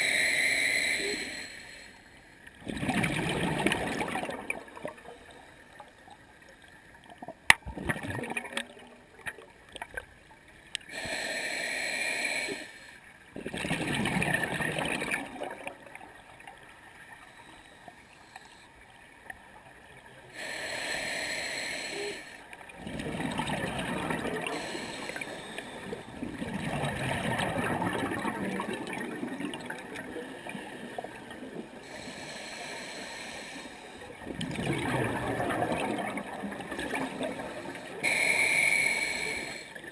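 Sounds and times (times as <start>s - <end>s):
diver breathing through regulator: 0.0s - 2.1s, 10.9s - 13.0s, 20.3s - 22.5s, 24.0s - 26.2s, 31.8s - 34.1s, 37.4s - 39.9s
exhaled bubbles: 2.6s - 6.2s, 7.0s - 10.1s, 13.3s - 17.3s, 22.7s - 32.2s, 34.2s - 39.9s.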